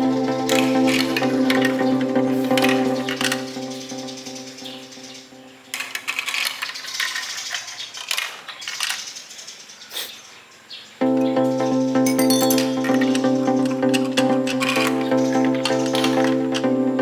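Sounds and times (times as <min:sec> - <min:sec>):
background music: 0:00.0 - 0:05.7, 0:11.0 - 0:17.0
marbles rattling down marble run: 0:05.7 - 0:09.2.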